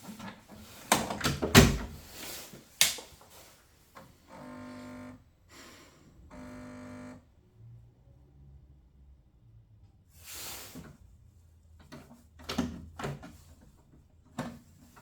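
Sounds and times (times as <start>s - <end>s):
knocks and clatter of parts: 0.0s - 2.0s.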